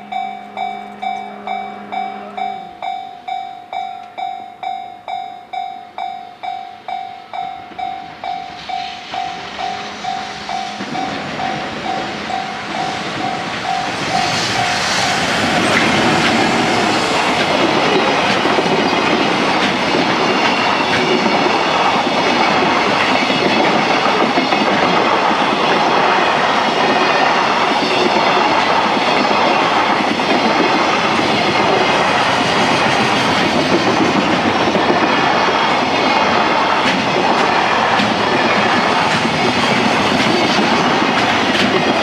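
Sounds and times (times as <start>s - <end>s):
freight train rumbling past: 0.0s - 42.0s
high wheel squeal: 7.4s - 17.4s.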